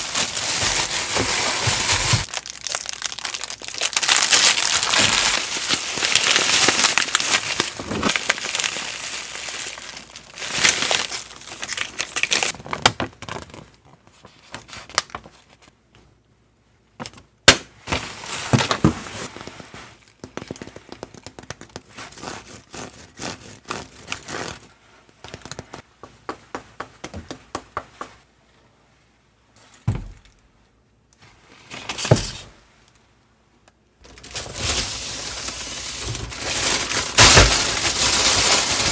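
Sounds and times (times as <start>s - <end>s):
rustling and crinkling: 0.0s - 16.1s, 17.8s - 26.2s, 34.0s - 38.9s.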